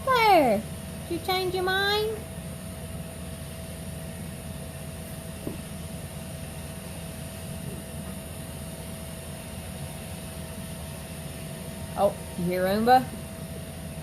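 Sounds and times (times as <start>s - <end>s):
constant whine: 0.0s - 14.0s.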